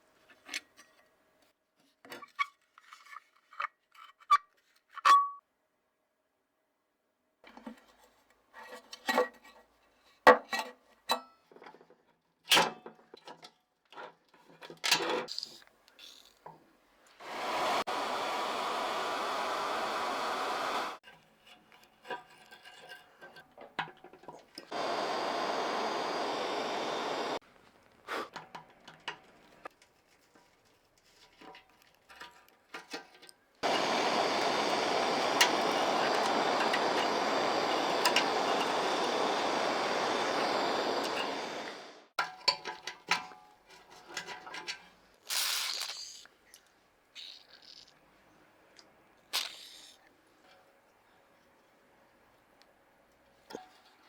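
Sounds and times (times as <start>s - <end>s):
power tool running: 17.2s - 21.0s, 24.7s - 27.4s, 33.6s - 42.1s.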